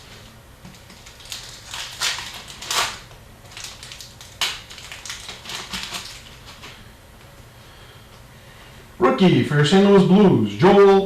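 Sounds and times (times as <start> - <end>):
cards and wrappers rustling: 0.1 - 6.8.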